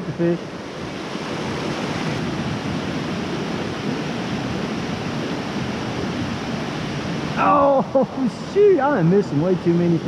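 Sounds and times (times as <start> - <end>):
river rushing over rocks: 0.0 - 9.1.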